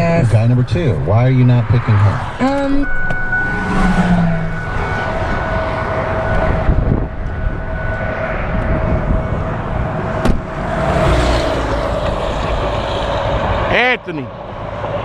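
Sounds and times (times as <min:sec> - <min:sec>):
mid-pitched hum: 0:00.0 - 0:11.0
roadside vehicle noise: 0:00.0 - 0:15.0.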